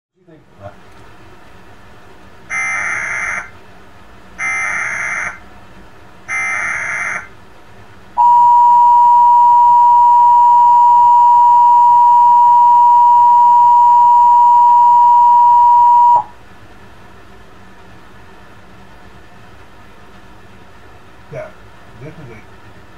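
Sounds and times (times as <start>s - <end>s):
data tone bursts: 8.2s - 16.3s
two-tone attention signal: 8.2s - 16.3s.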